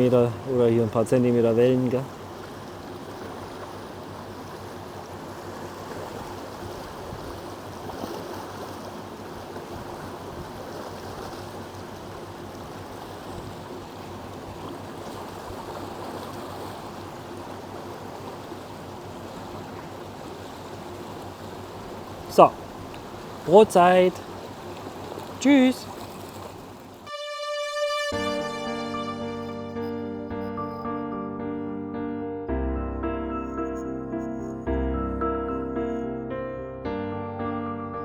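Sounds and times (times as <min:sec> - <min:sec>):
river water rushing: 0:11.0 - 0:27.3.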